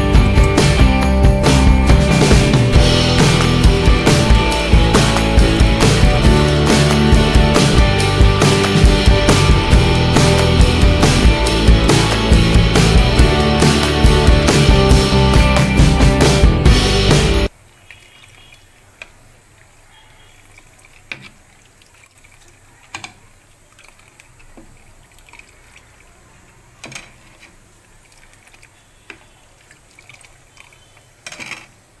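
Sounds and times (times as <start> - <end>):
sharp clinks or drips: 0.0 - 15.8
faint liquid sounds: 1.4 - 15.9, 16.8 - 32.0.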